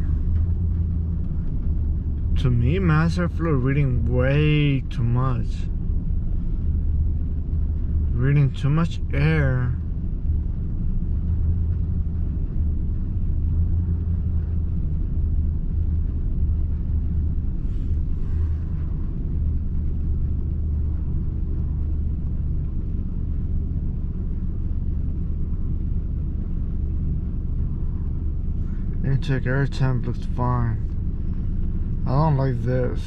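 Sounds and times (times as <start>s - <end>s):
truck engine idling: 0.0s - 33.0s.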